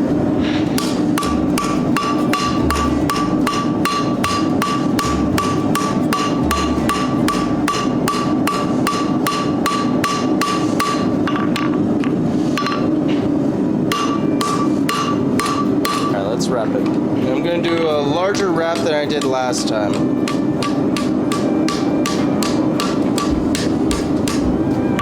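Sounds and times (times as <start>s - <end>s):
hammer striking steel on anvil: 0.7s - 11.8s, 12.6s - 13.2s, 13.9s - 16.3s, 17.6s - 25.0s.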